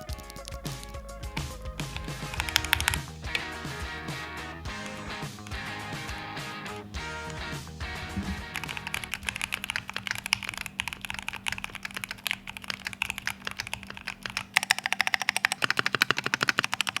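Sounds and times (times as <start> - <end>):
mechanical keyboard typing: 0.0 - 1.2, 1.8 - 3.6, 7.2 - 17.0.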